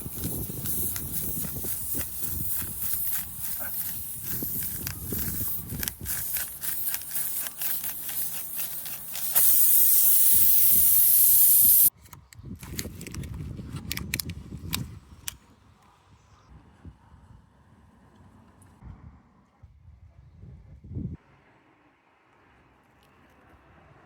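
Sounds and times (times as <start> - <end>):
compressed air hissing: 0.0 - 11.9.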